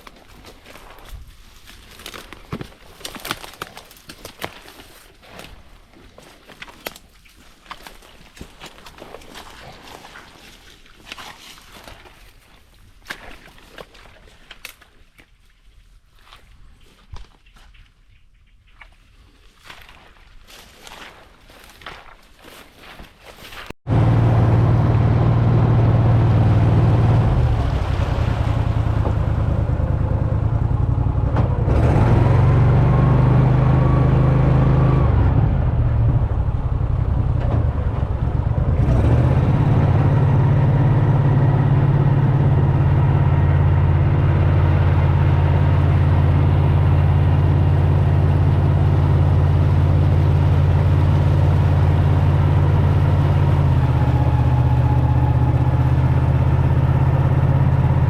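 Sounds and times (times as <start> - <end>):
boat motor running: 23.9 - 58.0.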